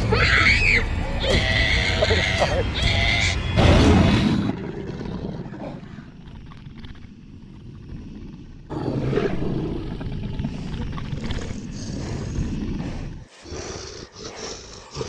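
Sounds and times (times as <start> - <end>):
harsh monster cry: 0.0 - 4.7.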